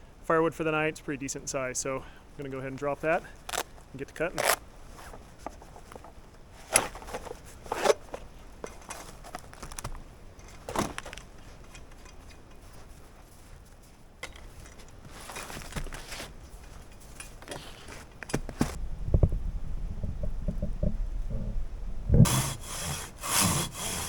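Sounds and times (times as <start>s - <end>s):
knocks and scrapes: 4.4s - 24.0s
footsteps crunching in snow: 12.6s - 18.8s.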